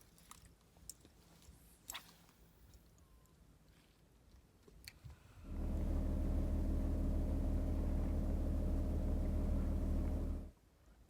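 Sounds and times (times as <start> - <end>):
low steady engine drone: 5.4 - 10.6.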